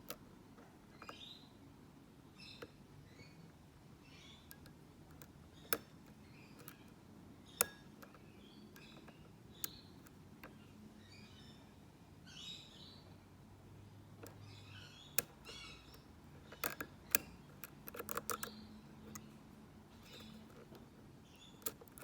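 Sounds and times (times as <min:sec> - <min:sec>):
lock pick scratching: 0:04.4 - 0:07.0, 0:14.1 - 0:22.0
padlock pin clicks: 0:04.4 - 0:10.6, 0:14.1 - 0:22.0.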